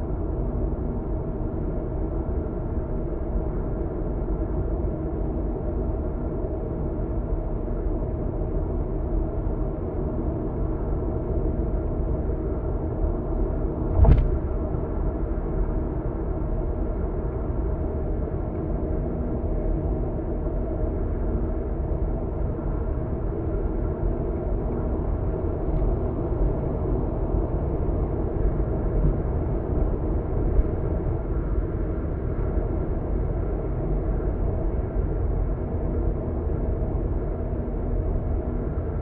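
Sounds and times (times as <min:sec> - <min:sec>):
road and engine noise inside car: 0:00.0 - 0:39.0
short thump: 0:13.9 - 0:14.7.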